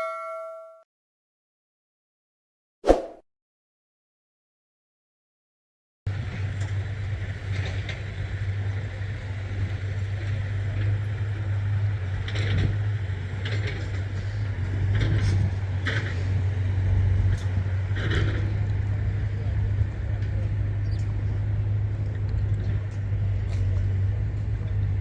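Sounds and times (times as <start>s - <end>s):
short high-pitched sounds: 0.0s - 0.8s.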